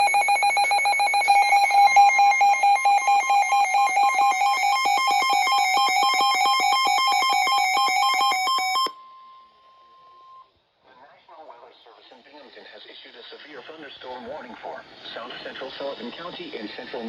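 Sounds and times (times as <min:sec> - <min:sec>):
warbling weather alert tone: 0:00.0 - 0:08.8.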